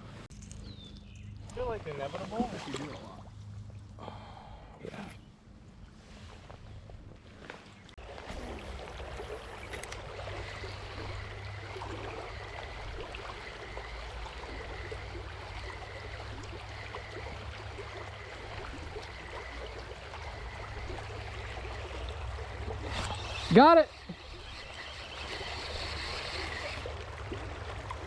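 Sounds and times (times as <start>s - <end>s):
river water rushing: 8.0s - 28.0s.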